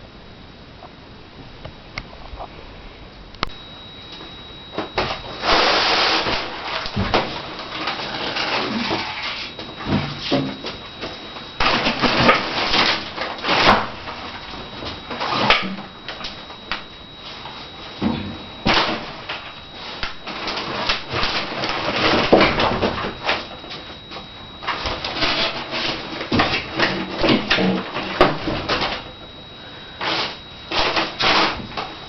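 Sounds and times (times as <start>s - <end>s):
packaging scraping and rustling: 4.8s - 15.8s, 18.7s - 29.0s, 30.0s - 32.0s.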